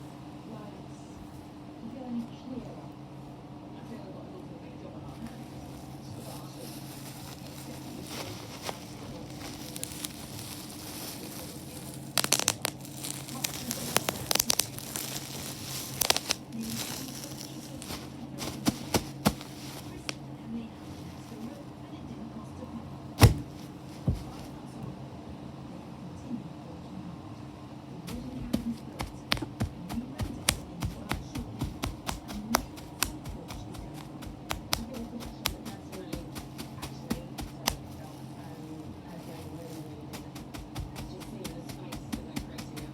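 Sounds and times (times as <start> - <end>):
bubble wrap popping: 5.2 - 21.6, 23.2 - 24.6, 28.1 - 42.9
plastic crinkling: 5.2 - 21.7, 28.1 - 42.9.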